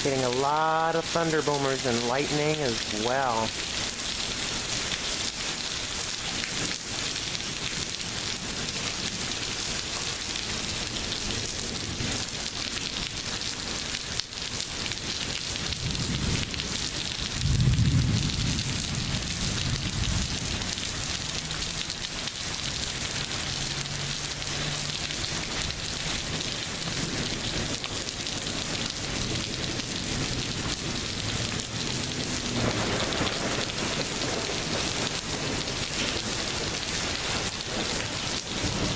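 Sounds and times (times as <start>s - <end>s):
heavy rain pouring: 0.0s - 38.9s
thunder rumbling: 17.3s - 20.4s, 30.6s - 36.8s.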